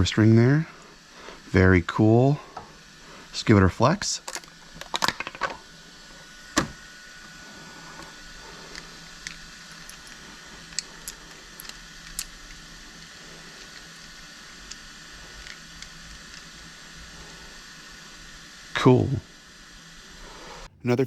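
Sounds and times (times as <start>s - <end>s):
background hiss: 20.2s - 21.0s.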